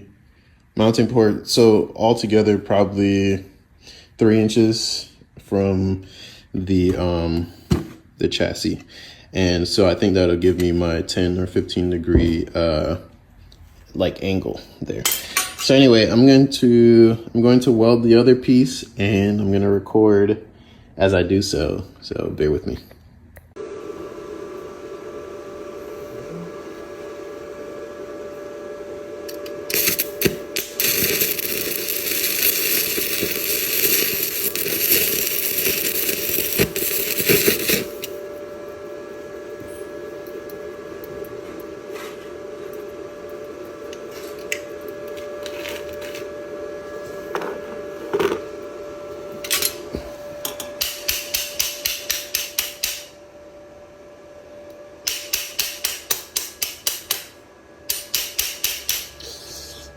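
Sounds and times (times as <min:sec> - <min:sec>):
steady hum: 0:00.0 - 0:59.9
welding arc crackling and hissing: 0:29.2 - 0:38.4, 0:39.6 - 0:46.3, 0:49.4 - 0:53.2, 0:55.0 - 0:59.9.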